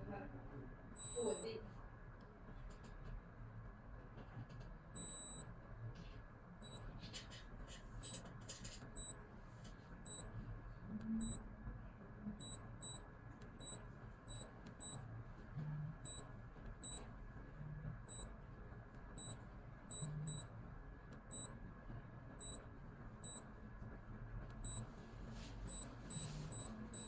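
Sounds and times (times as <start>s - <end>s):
digital watch beeping: 1.0s - 1.5s, 5.0s - 5.4s, 8.0s - 8.2s, 11.2s - 11.4s, 12.4s - 13.0s, 13.6s - 15.0s, 16.0s - 16.2s, 19.2s - 20.4s, 21.3s - 21.5s, 22.4s - 22.6s, 23.2s - 23.4s, 24.6s - 24.8s, 25.7s - 27.0s.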